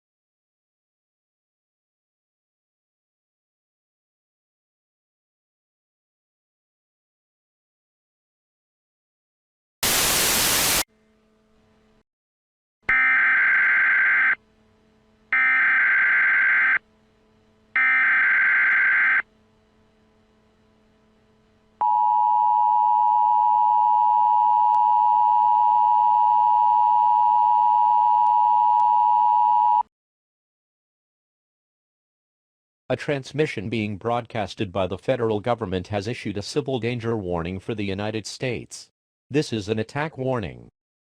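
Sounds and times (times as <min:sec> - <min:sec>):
screeching digital bursts: 0:09.8 - 0:10.8
loud static: 0:09.8 - 0:10.9.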